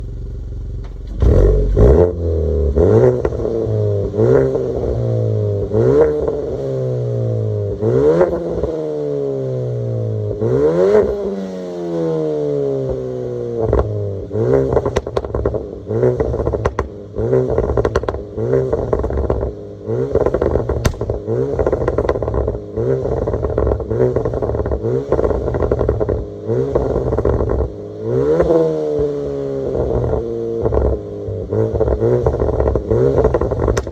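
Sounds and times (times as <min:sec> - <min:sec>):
exhaust pops and bangs: 0:00.8 - 0:01.9, 0:14.7 - 0:27.7, 0:31.6 - 0:33.9
car engine revving: 0:00.8 - 0:33.9.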